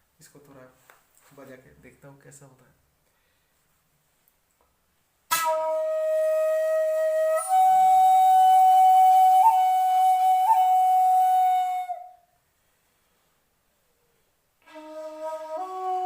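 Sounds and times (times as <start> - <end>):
shakuhachi flute note: 5.3 - 12.2, 14.6 - 16.0.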